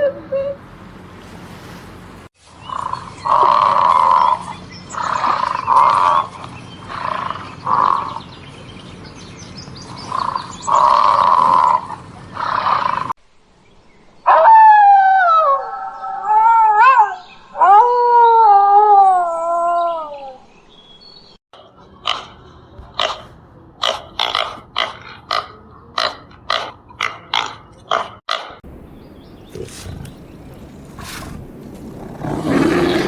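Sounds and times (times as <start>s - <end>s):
animal howling: 14.3s - 20.3s, 28.8s - 33.0s
harsh animal calls: 21.7s - 33.0s.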